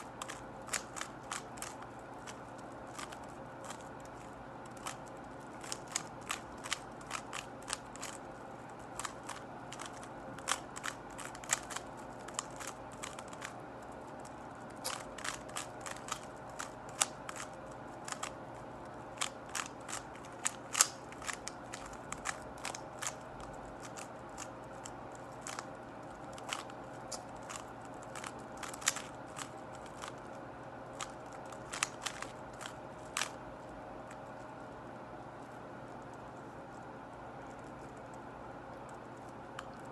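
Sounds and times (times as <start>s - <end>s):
speed cube clicking: 0.0s - 18.4s, 19.2s - 25.7s, 26.3s - 30.3s, 31.0s - 33.4s.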